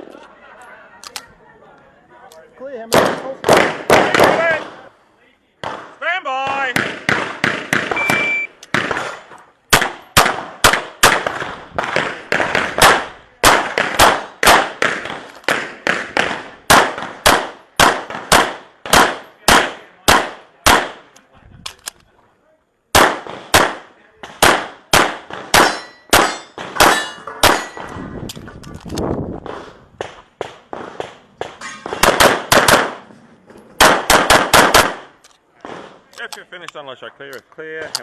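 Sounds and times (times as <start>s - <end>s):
shot timer beep: 8.0s - 8.6s
handgun shots: 24.4s - 28.0s.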